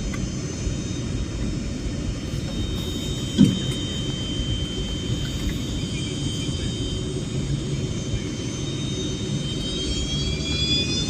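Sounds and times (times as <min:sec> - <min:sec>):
airliner cabin low rumble: 0:00.0 - 0:11.0
high engine whine: 0:00.0 - 0:11.0
short thump: 0:03.3 - 0:03.9.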